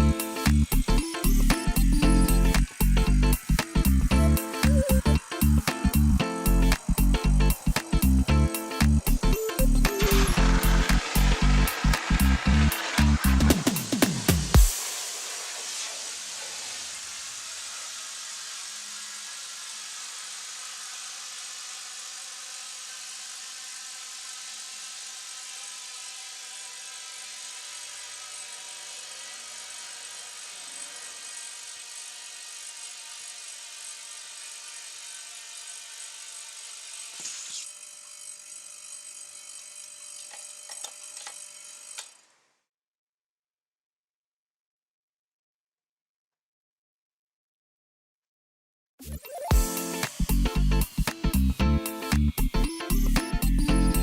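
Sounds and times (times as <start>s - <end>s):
compressed air hissing: 0.2s - 9.2s, 49.5s - 53.5s.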